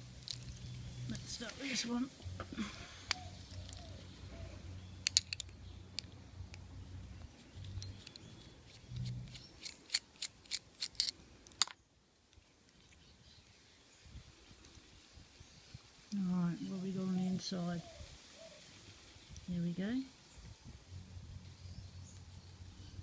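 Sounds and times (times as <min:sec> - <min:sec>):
padlock clicking metallically: 0:05.0 - 0:06.6, 0:07.7 - 0:11.8.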